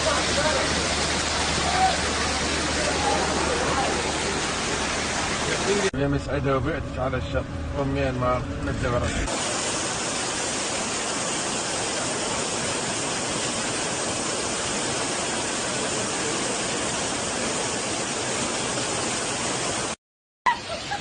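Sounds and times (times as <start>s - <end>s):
heavy rain falling: 0.0s - 5.9s, 9.2s - 20.0s.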